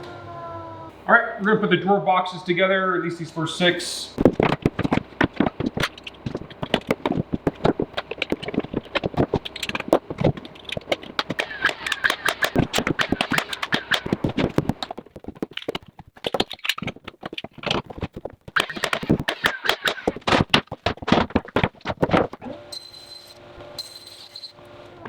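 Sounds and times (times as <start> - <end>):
wooden parts knocking and clattering: 4.2 - 22.4.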